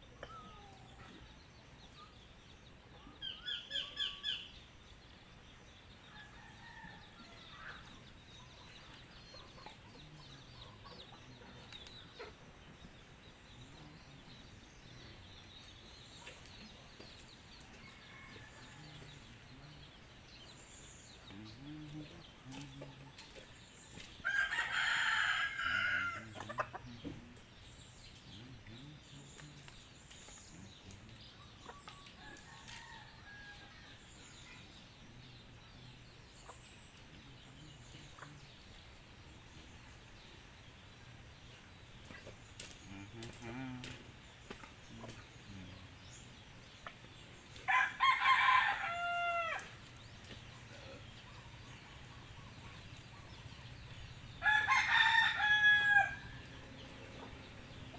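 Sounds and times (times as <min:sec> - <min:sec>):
faint bird calls: 0:00.0 - 0:04.9, 0:41.3 - 0:47.7
rooster crowing: 0:24.2 - 0:26.6, 0:47.7 - 0:49.8, 0:54.4 - 0:56.6.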